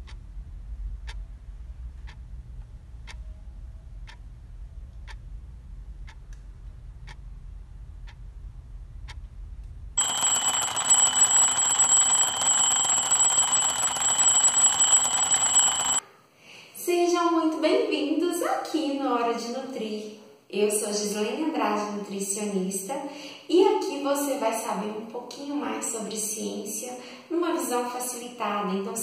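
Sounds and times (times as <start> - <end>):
low hum: 0.0 - 16.0
alarm clock ringing: 10.0 - 16.0.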